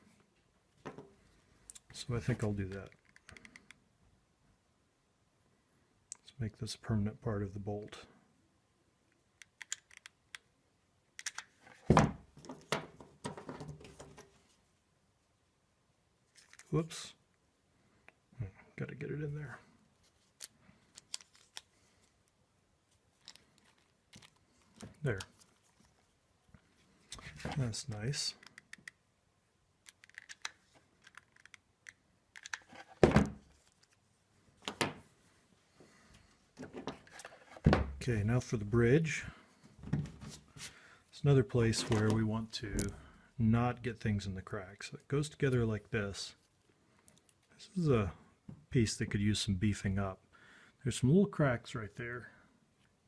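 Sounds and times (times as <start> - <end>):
small parts clicking and tapping: 9.1 - 10.5, 11.2 - 11.6, 20.3 - 22.4, 29.8 - 32.7.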